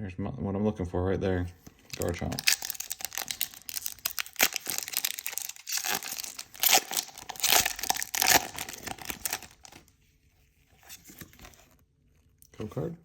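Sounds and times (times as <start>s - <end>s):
foil wrapper tearing and crinkling: 1.8s - 9.9s.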